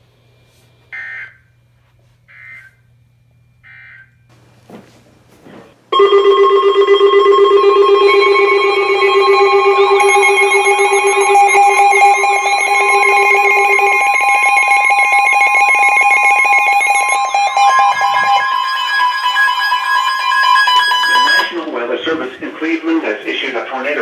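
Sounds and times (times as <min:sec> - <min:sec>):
electronic alert alarm: 0:00.9 - 0:01.5, 0:02.3 - 0:02.8, 0:03.6 - 0:04.2, 0:06.0 - 0:21.6
weather radio data tones: 0:00.9 - 0:01.5, 0:02.3 - 0:02.8, 0:08.0 - 0:24.0
warbling tone: 0:06.0 - 0:21.5.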